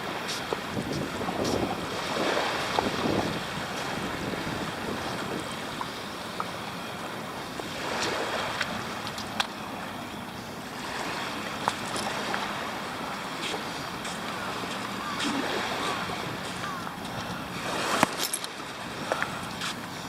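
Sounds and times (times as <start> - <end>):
wind on microphone: 0.0 - 5.9, 11.5 - 20.0
sea waves washing on shore: 0.0 - 20.0.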